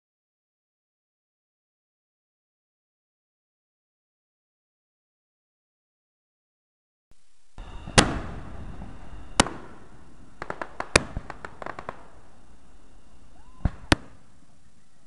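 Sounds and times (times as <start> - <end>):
fireworks banging: 7.2 - 15.0
small firework cracks: 7.7 - 14.3.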